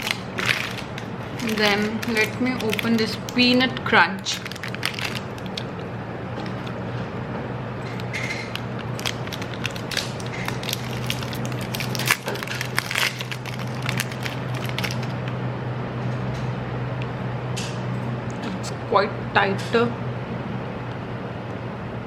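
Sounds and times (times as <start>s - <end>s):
plastic wrapper crinkling and tearing: 0.0s - 6.8s, 7.9s - 15.3s.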